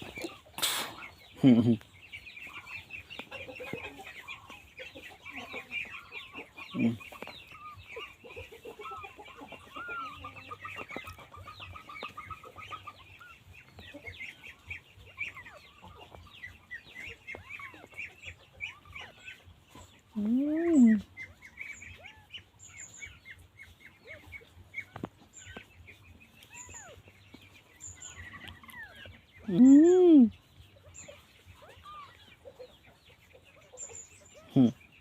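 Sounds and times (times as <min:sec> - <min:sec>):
small animals high calls: 0:26.4 - 0:27.1, 0:31.0 - 0:32.5.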